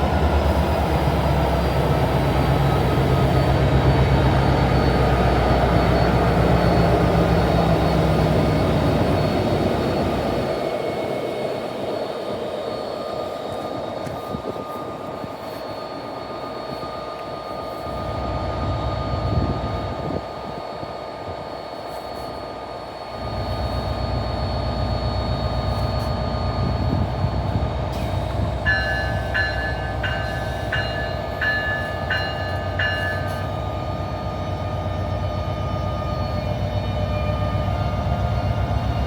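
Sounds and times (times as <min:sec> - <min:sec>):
train rumble with electric whine: 0:00.0 - 0:39.0
bell-like tone ringing: 0:28.6 - 0:33.7.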